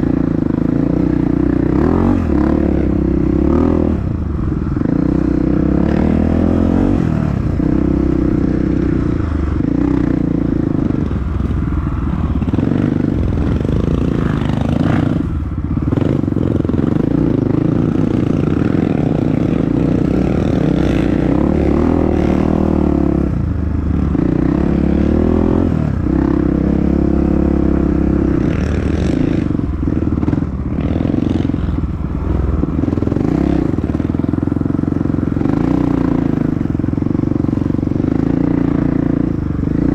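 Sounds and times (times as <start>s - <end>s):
dirt bike engine revving: 0.0s - 39.9s.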